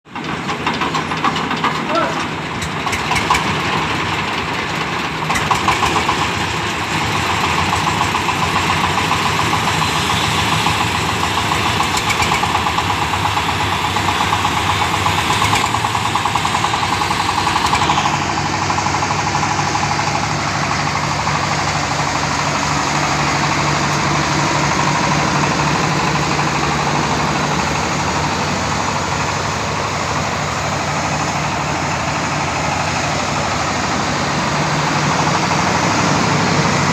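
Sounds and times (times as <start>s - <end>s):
engine hum: 0.1s - 36.9s
corn sheller rattling: 0.2s - 9.5s.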